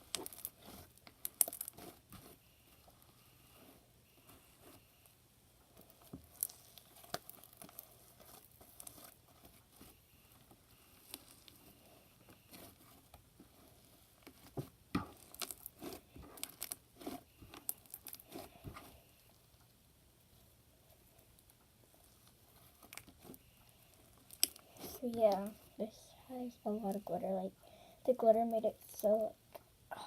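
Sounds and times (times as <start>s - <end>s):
glitter slime crunching: 0.0s - 2.4s, 5.8s - 19.4s, 21.2s - 26.0s.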